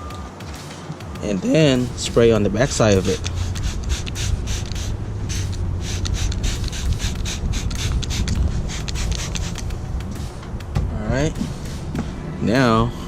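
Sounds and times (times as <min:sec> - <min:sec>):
spray bottle squirting: 0:01.7 - 0:10.7, 0:11.3 - 0:12.0.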